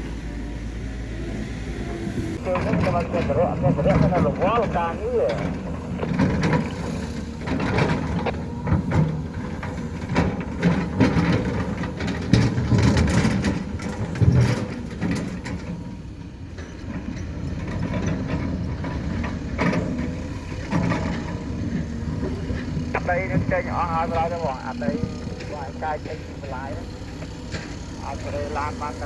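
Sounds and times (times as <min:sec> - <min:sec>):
heavy machinery engine: 0:00.0 - 0:29.0
metal clanks and knocks: 0:02.4 - 0:23.6.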